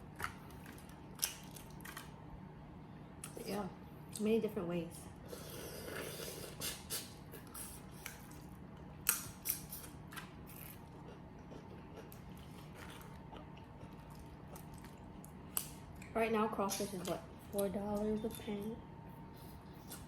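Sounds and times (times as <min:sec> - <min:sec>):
crawfish shells snapping and peeling: 0:00.1 - 0:02.1.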